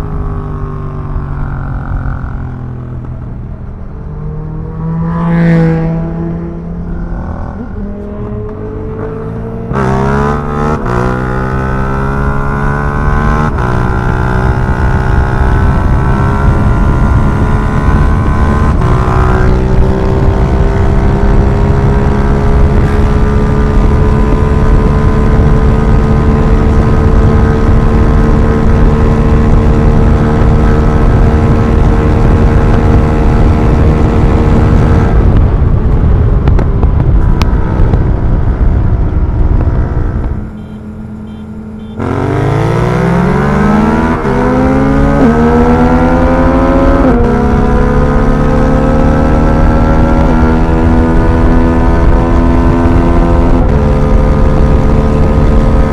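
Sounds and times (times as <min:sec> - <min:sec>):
motorcycle engine accelerating: 0:00.0 - 0:55.9
wind rushing: 0:04.4 - 0:40.6.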